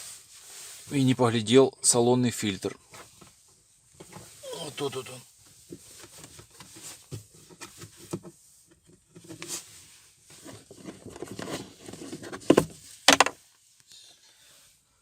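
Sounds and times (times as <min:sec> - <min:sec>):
sharp plastic knocks: 0:12.5 - 0:13.4.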